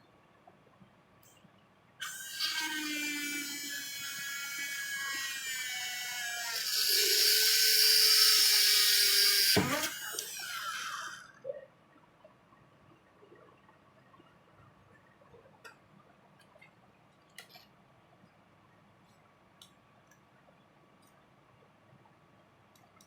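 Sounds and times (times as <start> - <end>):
electric drill whining: 2.0 - 11.3.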